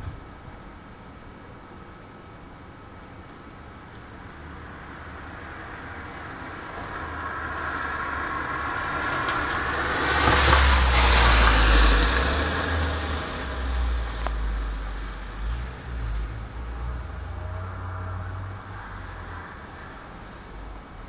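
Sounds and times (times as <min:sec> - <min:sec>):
vehicle driving past: 0:04.4 - 0:20.6.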